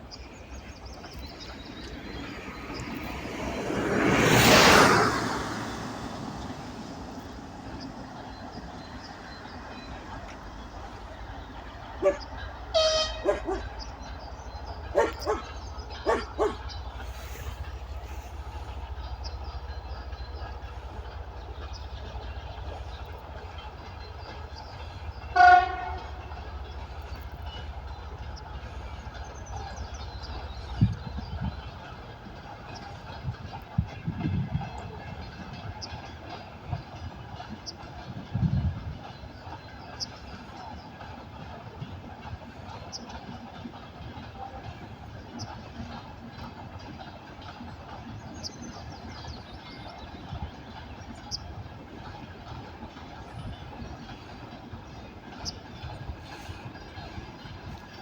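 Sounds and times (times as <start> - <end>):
low rumble of moving train: 0.0 - 58.0
locomotive horn toot: 12.0 - 13.8, 25.2 - 26.6.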